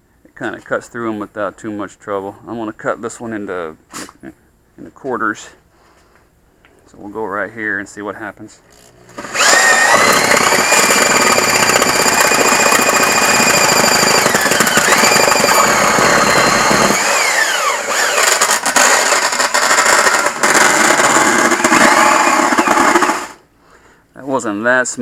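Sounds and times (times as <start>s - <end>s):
band saw cutting tire: 8.8s - 23.4s.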